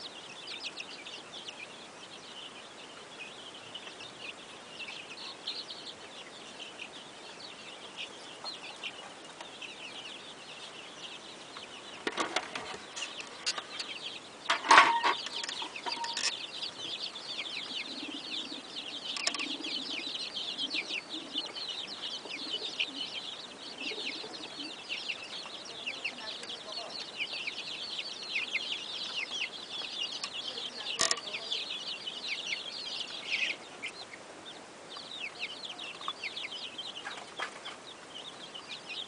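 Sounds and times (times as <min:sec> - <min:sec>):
chickens clucking: 0:00.0 - 0:39.0
chicks peeping: 0:00.0 - 0:39.0
wings flapping and scuffling: 0:12.0 - 0:13.9, 0:37.0 - 0:37.9.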